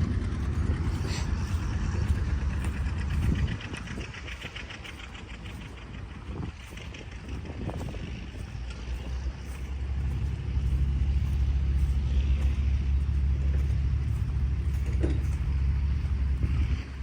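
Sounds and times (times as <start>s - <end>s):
low engine rumble: 0.0s - 17.0s.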